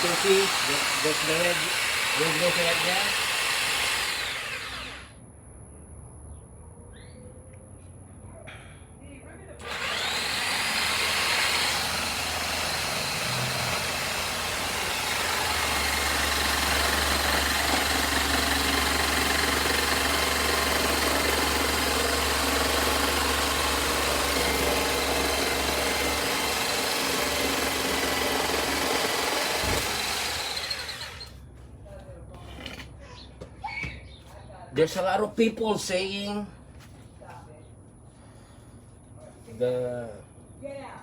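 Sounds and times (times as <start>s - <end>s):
jigsaw cutting: 0.0s - 5.1s, 9.6s - 31.4s.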